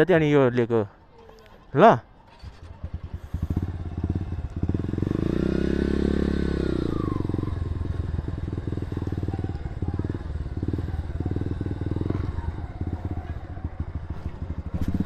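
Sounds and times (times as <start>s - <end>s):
motorcycle engine revving: 2.3s - 15.0s.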